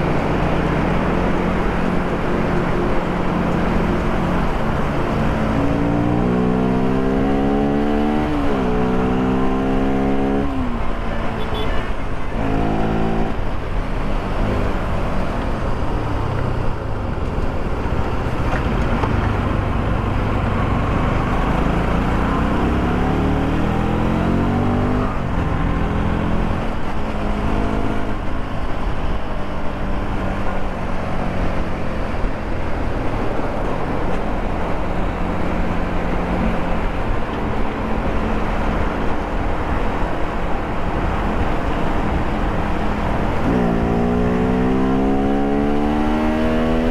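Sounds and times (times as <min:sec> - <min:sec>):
motorcycle engine running: 0:13.3 - 0:24.2.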